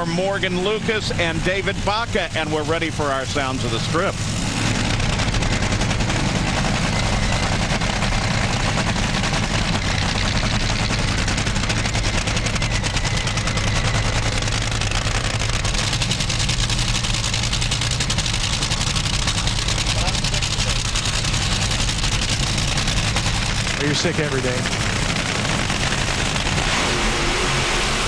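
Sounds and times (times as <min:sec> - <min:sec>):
dragster engines crackling rattle: 0:00.0 - 0:28.0.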